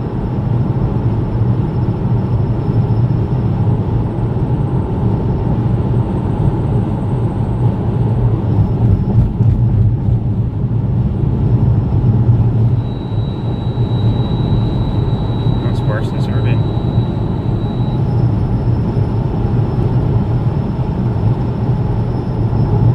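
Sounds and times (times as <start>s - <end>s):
car interior low rumbling drone: 0.0s - 22.9s
thin high whine: 12.7s - 19.1s.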